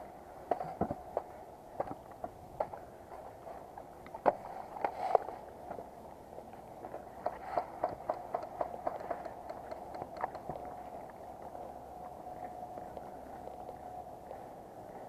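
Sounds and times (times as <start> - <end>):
faint hum: 0.0 - 15.0.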